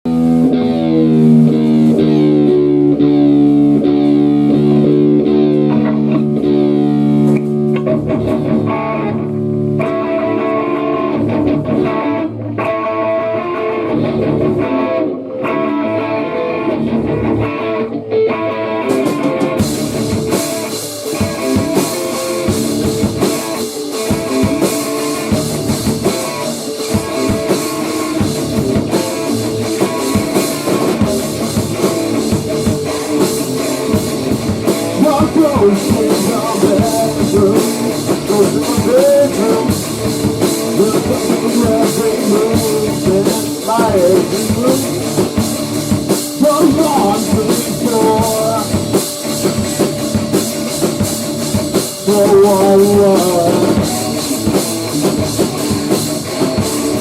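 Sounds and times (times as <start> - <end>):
electric guitar chords and riff: 0.0 - 57.0
drums with cymbals: 18.9 - 57.0.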